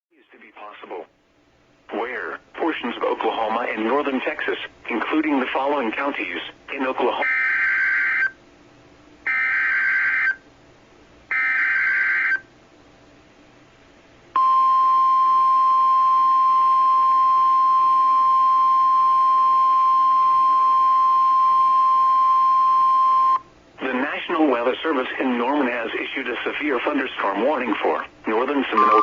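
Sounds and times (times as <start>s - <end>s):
steady attention tone: 28.4s - 29.0s.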